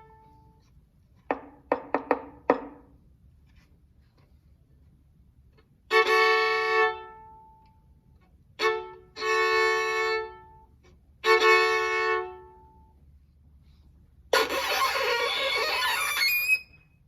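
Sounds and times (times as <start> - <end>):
violin bowed notes: 5.9 - 7.7, 8.6 - 12.9, 14.3 - 16.8.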